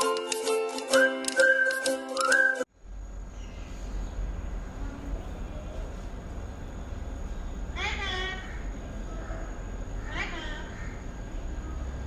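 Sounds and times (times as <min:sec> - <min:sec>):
background music: 0:00.0 - 0:02.7
low steady rumble: 0:02.7 - 0:12.0.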